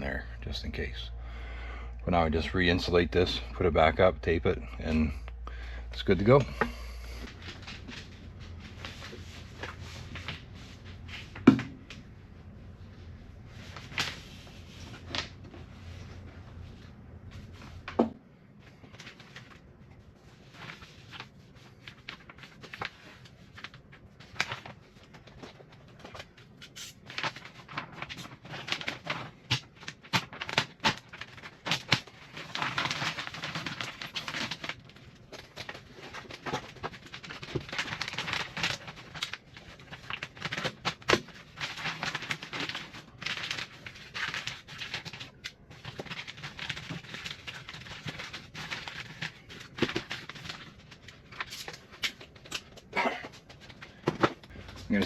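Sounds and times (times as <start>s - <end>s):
plastic sheeting crinkling: 13.0s - 52.8s.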